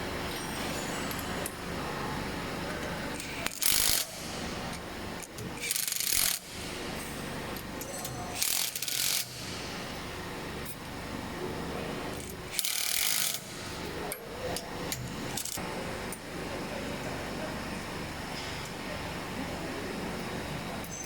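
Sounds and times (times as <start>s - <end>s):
power wrench bursts: 3.4s - 4.6s, 5.6s - 6.6s, 8.3s - 9.7s, 12.5s - 13.7s.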